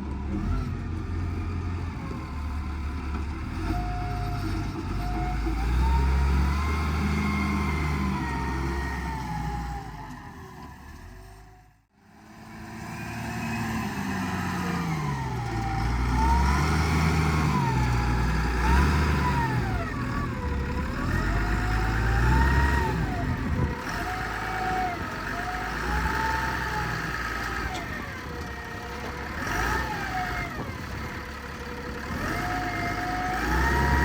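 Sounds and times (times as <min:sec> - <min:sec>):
diesel engine revving: 0:00.0 - 0:34.0
engine whine: 0:26.8 - 0:34.0.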